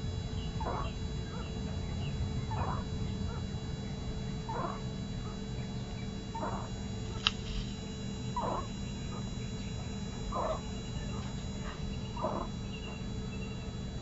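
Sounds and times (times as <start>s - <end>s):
steady low hum: 0.0s - 14.0s
sharp click: 7.2s - 7.8s.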